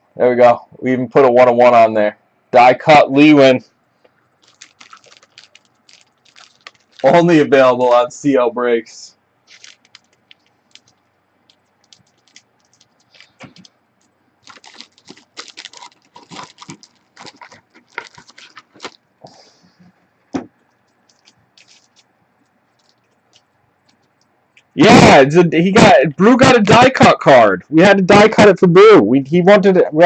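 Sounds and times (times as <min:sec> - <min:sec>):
card packaging crackling and rustling: 0:04.4 - 0:07.5, 0:09.5 - 0:13.7, 0:14.4 - 0:19.0, 0:20.9 - 0:24.2.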